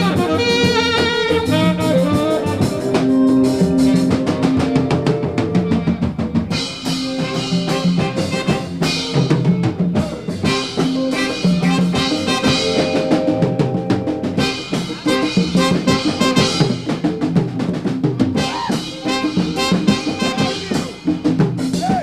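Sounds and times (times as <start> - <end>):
jazz band playing: 0.0 - 22.0
drum kit kick and snare hits: 8.0 - 20.6.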